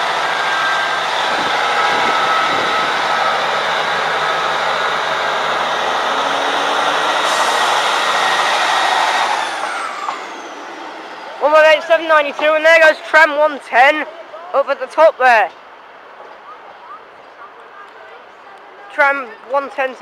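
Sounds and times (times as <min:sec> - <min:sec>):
loud hiss: 0:00.0 - 0:11.3
high whine falling in pitch: 0:00.0 - 0:12.0
diesel train engine: 0:00.0 - 0:20.0.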